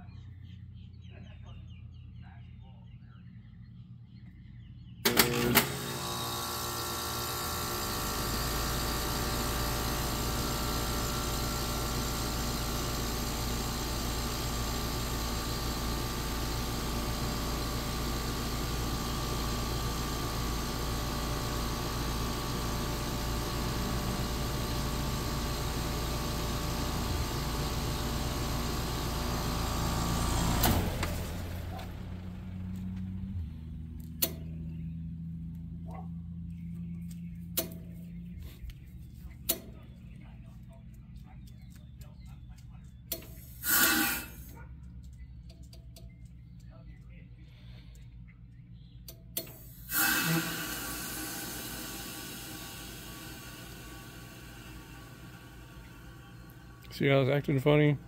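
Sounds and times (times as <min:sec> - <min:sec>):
deep low hum: 0:00.0 - 0:05.0, 0:08.8 - 0:43.5, 0:44.5 - 0:49.4
air conditioner humming: 0:01.6 - 0:58.0
air conditioner switch clicks: 0:34.1 - 0:34.5.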